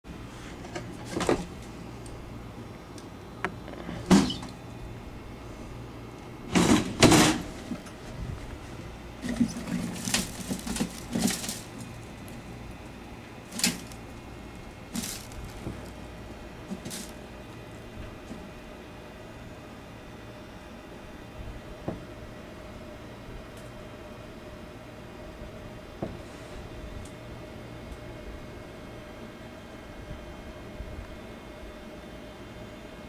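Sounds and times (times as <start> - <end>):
steady low hum: 0.1 - 33.0
knocks scuffs and rustles: 14.9 - 16.0.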